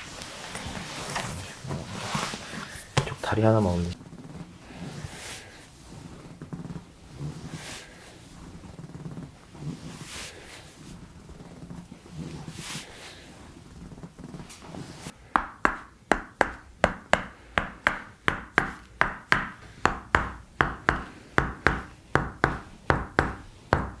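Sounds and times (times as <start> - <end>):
hands tapping on body: 15.3 - 24.0.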